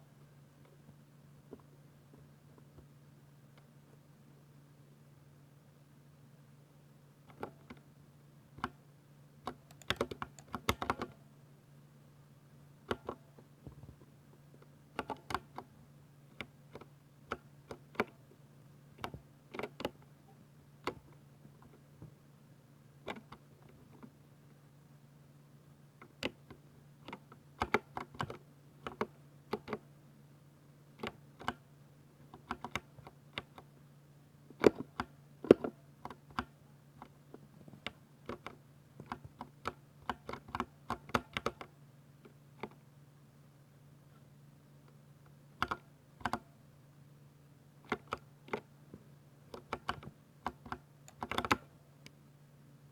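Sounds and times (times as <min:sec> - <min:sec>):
mechanical keyboard typing: 0:09.5 - 0:11.2, 0:49.5 - 0:51.7.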